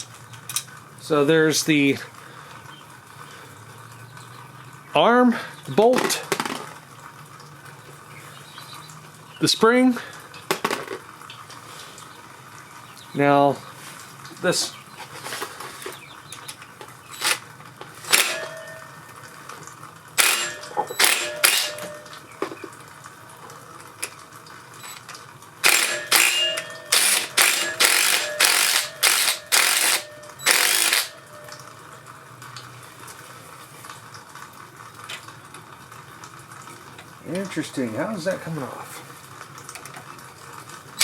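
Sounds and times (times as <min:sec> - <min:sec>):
metal tools rasping and clicking: 0:17.1 - 0:17.4, 0:18.0 - 0:18.9, 0:20.2 - 0:22.2, 0:25.6 - 0:31.6.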